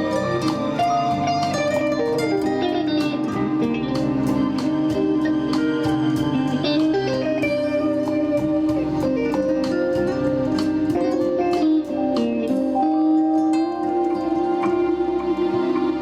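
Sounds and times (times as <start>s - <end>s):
guitar playing plucked notes: 0.0s - 16.0s.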